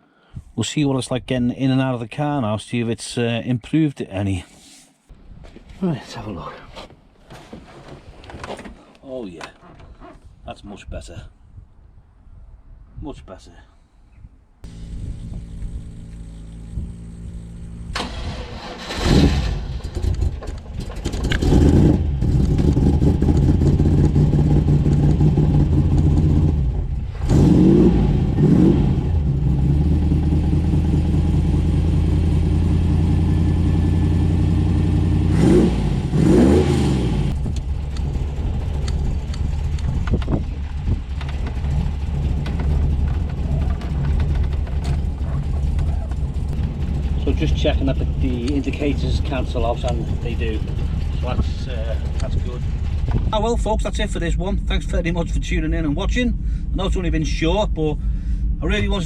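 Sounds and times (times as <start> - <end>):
car engine revving and idling: 14.6 - 54.3.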